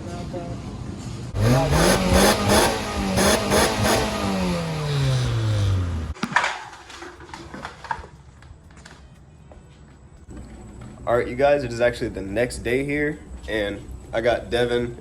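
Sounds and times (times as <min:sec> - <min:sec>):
car engine revving: 0:01.3 - 0:06.2.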